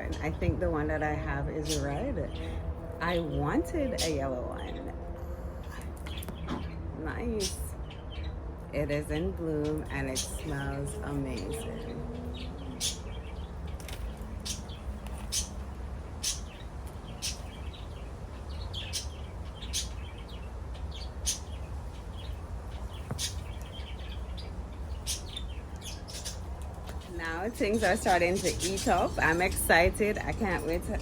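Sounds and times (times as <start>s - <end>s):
bird chirping: 9.1s - 31.0s.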